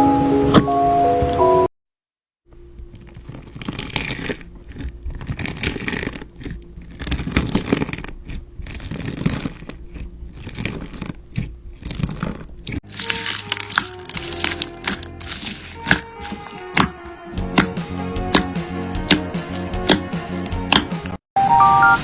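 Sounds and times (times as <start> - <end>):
slime crackling and crunching: 2.9 - 18.5.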